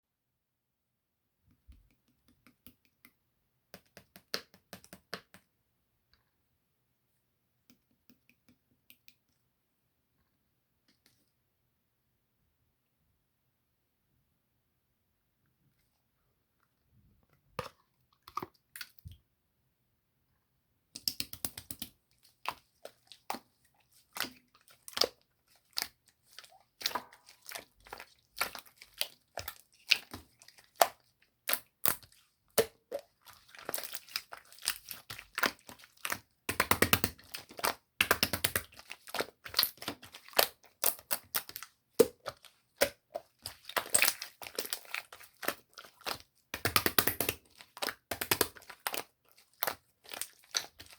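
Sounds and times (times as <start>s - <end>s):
hands squishing slime: 21.0s - 50.9s.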